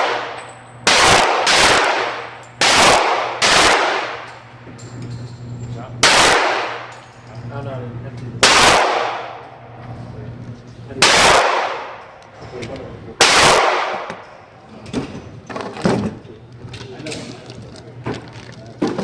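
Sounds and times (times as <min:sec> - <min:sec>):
gunshots with long echo: 0:00.0 - 0:04.4, 0:06.0 - 0:06.9, 0:08.4 - 0:09.4, 0:11.0 - 0:12.0, 0:13.2 - 0:14.3.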